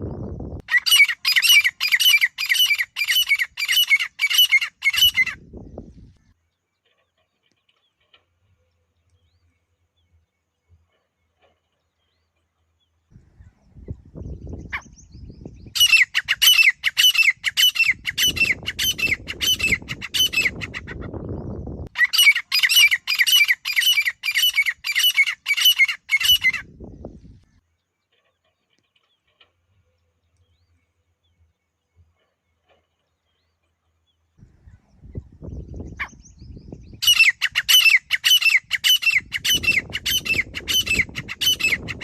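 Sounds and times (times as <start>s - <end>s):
francolin calling shrill notes: 21.9s - 26.6s.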